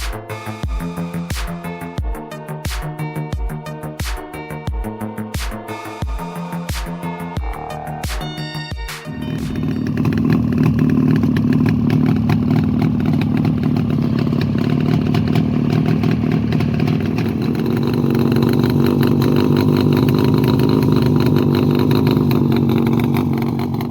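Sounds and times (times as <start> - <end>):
motorcycle engine idling: 9.1 - 23.9.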